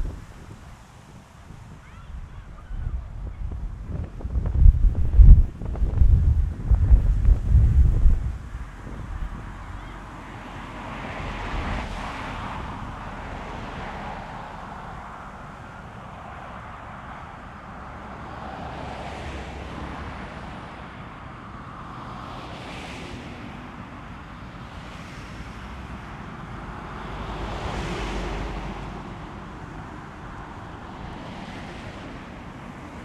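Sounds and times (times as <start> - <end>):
strong wind gusting on microphone: 0.0 - 14.2.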